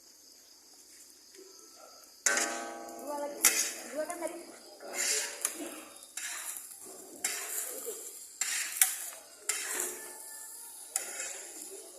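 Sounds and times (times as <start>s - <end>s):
spatula scraping a pan: 2.2s - 4.1s, 4.8s - 11.9s
high sizzle: 5.1s - 11.9s.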